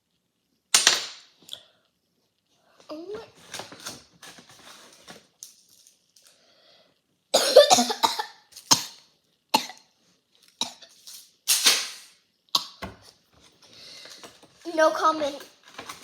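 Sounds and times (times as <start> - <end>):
person coughing: 7.4 - 9.0.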